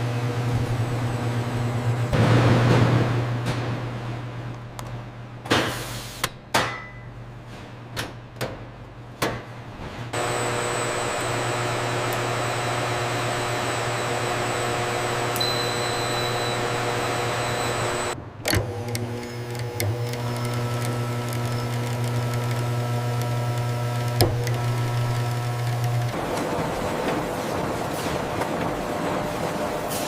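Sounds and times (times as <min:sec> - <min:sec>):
machine hum with whirring hiss: 0:10.2 - 0:30.0.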